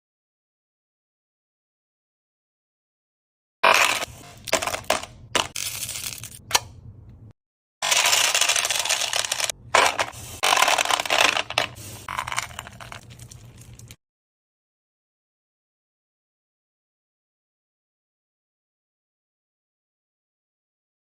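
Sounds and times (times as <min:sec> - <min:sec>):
candies pouring and clattering: 0:03.6 - 0:06.4, 0:07.8 - 0:14.0.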